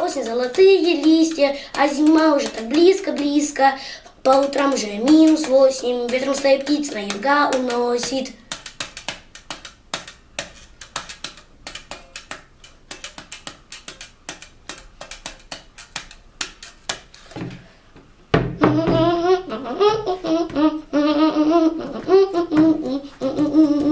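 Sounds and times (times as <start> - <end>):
knocking on wooden desk: 18.4 - 19.1
person humming a tune: 18.5 - 23.9.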